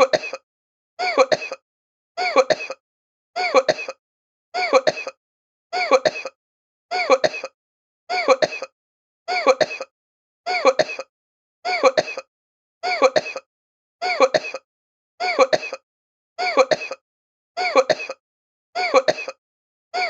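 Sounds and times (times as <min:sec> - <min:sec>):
person coughing: 0:00.0 - 0:00.4, 0:01.0 - 0:01.6, 0:02.2 - 0:02.8, 0:03.4 - 0:04.0, 0:04.6 - 0:05.2, 0:05.8 - 0:06.4, 0:07.0 - 0:08.7, 0:09.3 - 0:09.9, 0:10.5 - 0:11.1, 0:11.7 - 0:12.3, 0:12.9 - 0:13.5, 0:14.1 - 0:14.6, 0:15.2 - 0:15.8, 0:16.4 - 0:17.0, 0:17.6 - 0:18.2, 0:18.8 - 0:19.4.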